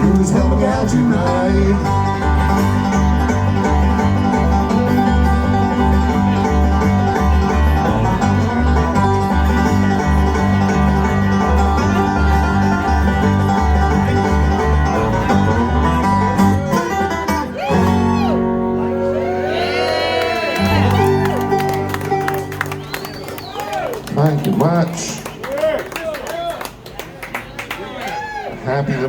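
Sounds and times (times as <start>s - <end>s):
banjo: 0.0s - 19.2s, 20.6s - 23.2s
low bass notes: 0.0s - 25.3s
guitar: 0.0s - 29.0s.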